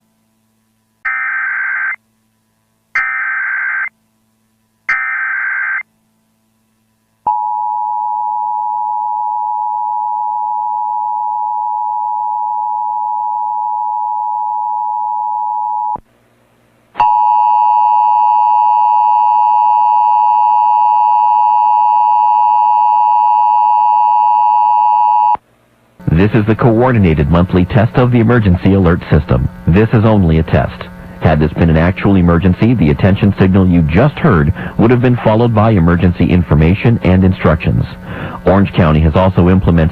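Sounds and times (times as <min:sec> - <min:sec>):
warbling digital data bursts: 0:03.0 - 0:03.9, 0:04.9 - 0:05.8.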